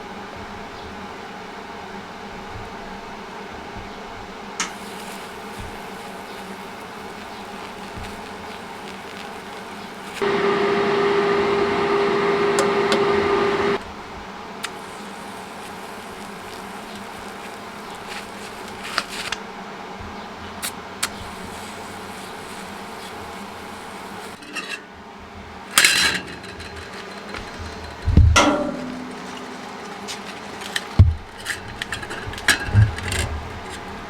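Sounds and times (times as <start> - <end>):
short hiss: 4.6 - 10.2, 14.6 - 19.4, 20.6 - 24.4
machine buzzing: 4.6 - 13.9, 26.1 - 34.0.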